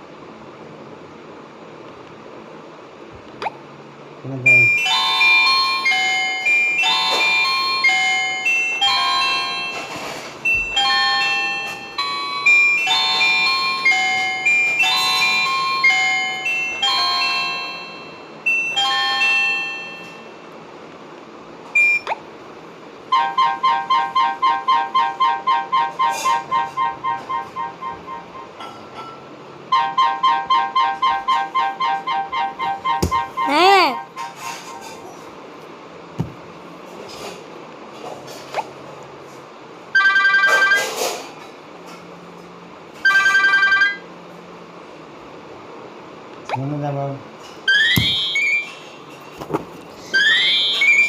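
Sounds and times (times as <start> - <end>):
bell-like ringtone melody: 4.6 - 20.4, 47.7 - 48.8, 50.2 - 51.0
short beep: 21.8 - 22.2
fast repeating ringtone notes: 47.7 - 48.7.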